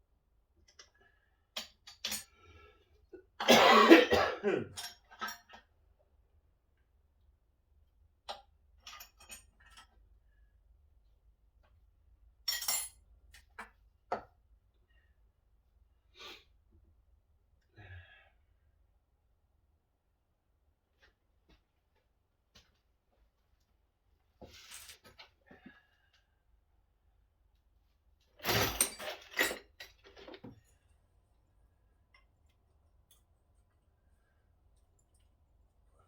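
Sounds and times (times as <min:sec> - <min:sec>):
man coughing: 0:03.4 - 0:04.8.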